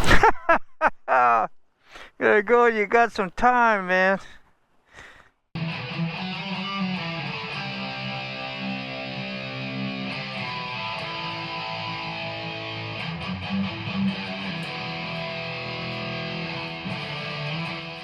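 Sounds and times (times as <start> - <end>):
guitar music with held chords: 5.6 - 18.0.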